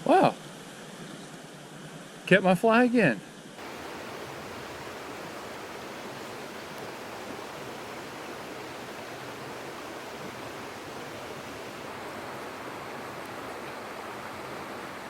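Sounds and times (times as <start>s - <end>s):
creek water flowing: 3.3s - 15.0s.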